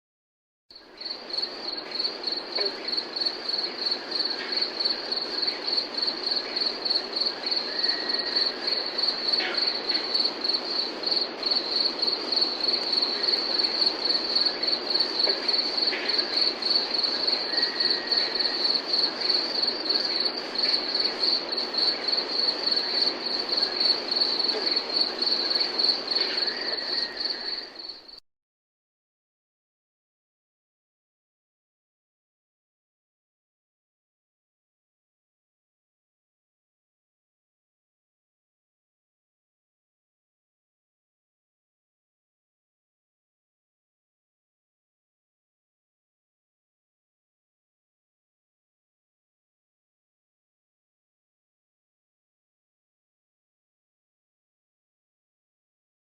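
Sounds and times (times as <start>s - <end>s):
crickets chirping: 0.7s - 28.2s.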